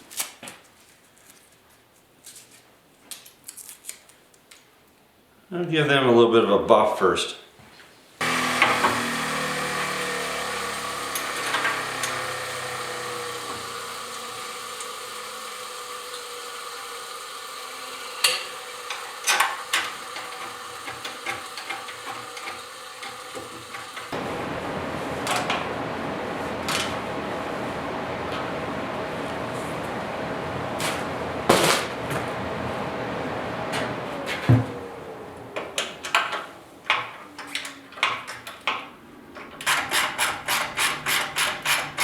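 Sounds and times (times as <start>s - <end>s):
buffing wheel motor running: 8.2s - 36.2s.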